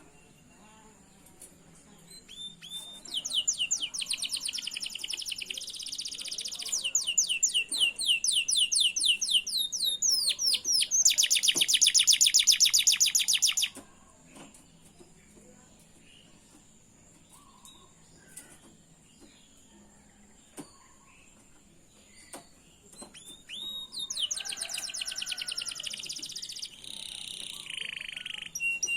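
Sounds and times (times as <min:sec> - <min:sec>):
canary singing trills: 0:02.0 - 0:13.8, 0:22.0 - 0:28.9.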